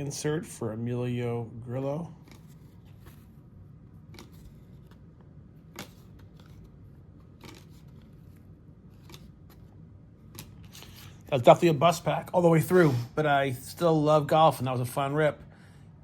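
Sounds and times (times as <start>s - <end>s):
cards sliding and tapping: 2.2s - 3.4s, 4.0s - 11.2s.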